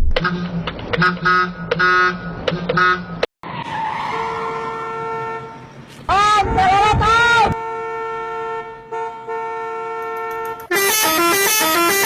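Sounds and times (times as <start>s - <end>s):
engine hum: 0.0s - 12.0s
vehicle noise: 0.0s - 12.0s
multi-tone bus horn blasts: 0.2s - 3.2s, 4.4s - 5.8s, 7.5s - 12.0s
held horn-like tone: 4.2s - 5.9s, 7.4s - 12.0s.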